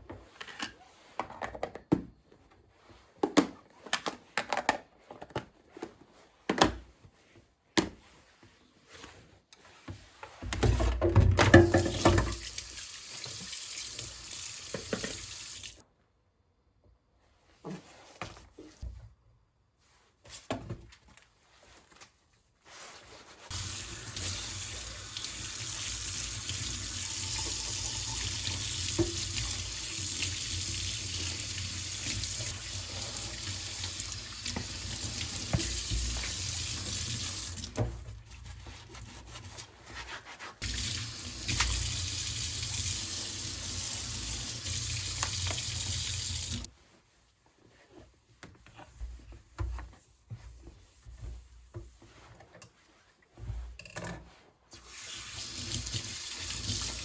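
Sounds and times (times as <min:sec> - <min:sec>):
tap running into sink: 0:14.6 - 0:15.4.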